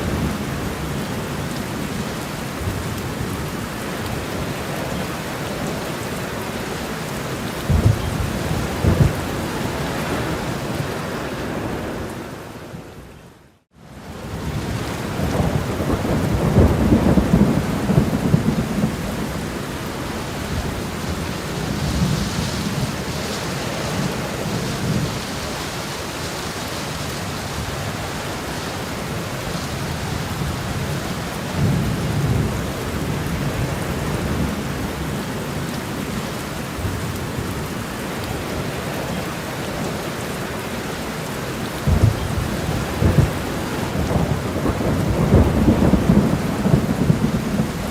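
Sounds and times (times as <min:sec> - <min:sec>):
steady rain: 0:00.0 - 0:47.9
thunder rumbling: 0:07.1 - 0:12.9, 0:14.2 - 0:25.6, 0:41.8 - 0:47.9.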